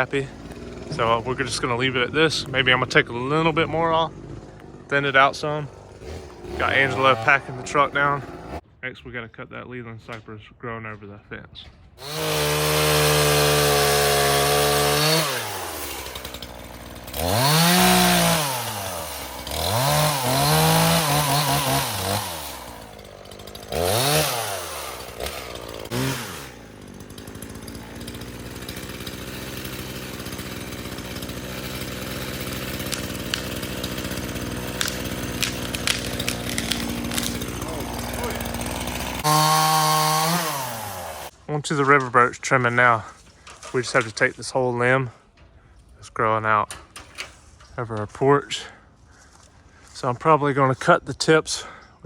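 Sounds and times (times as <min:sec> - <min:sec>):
chainsaw revving and idling: 0:00.0 - 0:08.6, 0:12.0 - 0:41.4.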